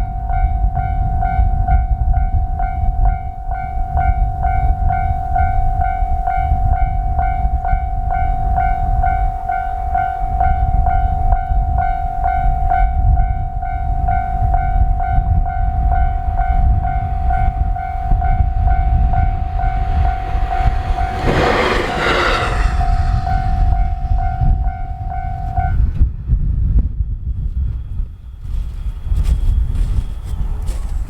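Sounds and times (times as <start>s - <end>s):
heavy low rumble: 14.8s - 27.4s
loud rush of noise: 17.8s - 25.6s.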